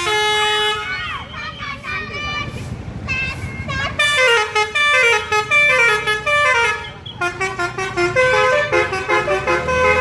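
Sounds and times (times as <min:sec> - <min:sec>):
musical bus horn playing tune: 0:00.0 - 0:00.9, 0:03.9 - 0:10.0.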